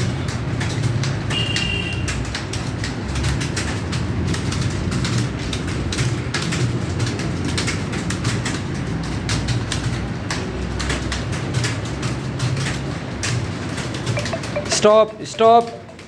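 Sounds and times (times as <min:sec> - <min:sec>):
keyboard typing clatter: 0:00.0 - 0:16.0
short high tone: 0:14.2 - 0:16.0.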